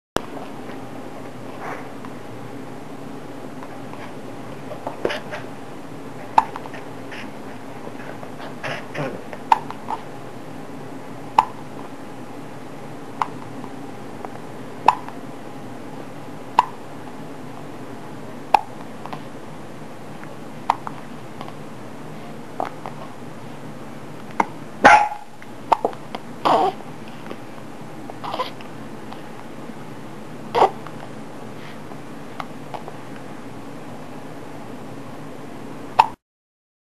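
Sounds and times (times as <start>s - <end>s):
person hiccuping: 30.5s - 30.8s.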